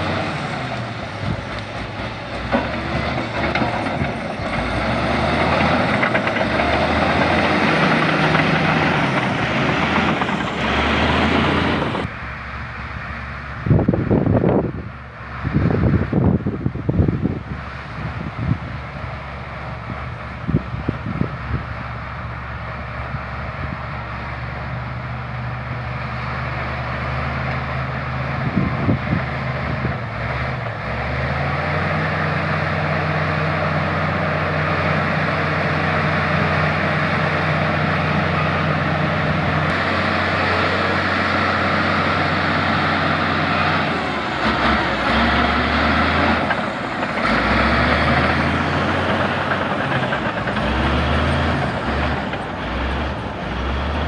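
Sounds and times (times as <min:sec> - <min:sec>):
bulldozer diesel engine working: 0:00.0 - 0:54.0.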